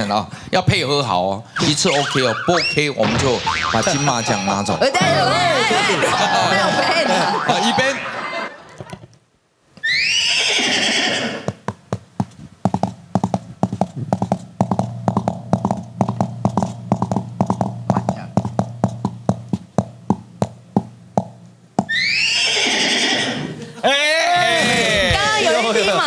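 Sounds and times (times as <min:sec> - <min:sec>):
horse whinny: 0:01.5 - 0:03.0, 0:09.8 - 0:11.5, 0:21.9 - 0:23.6
foley hoofbeats clip-clopping: 0:11.5 - 0:22.0.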